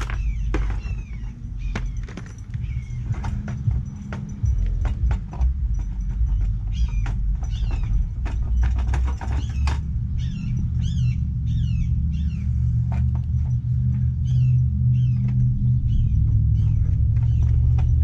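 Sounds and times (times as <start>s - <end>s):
sharp clicks and knocks: 0.0s - 11.1s, 12.5s - 14.2s
steady low hum: 0.0s - 18.0s
high chirping calls: 6.3s - 12.8s.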